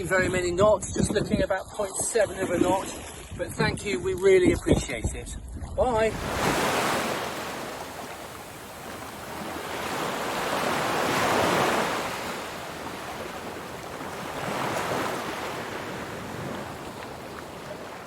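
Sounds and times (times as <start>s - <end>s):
wind on microphone: 0.0s - 18.0s
ocean waves rushing: 6.0s - 18.0s.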